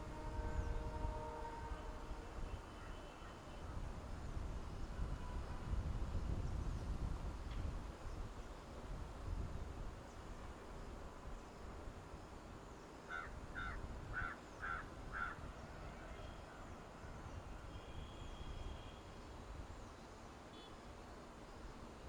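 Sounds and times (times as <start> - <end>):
crow cawing: 13.1 - 15.4.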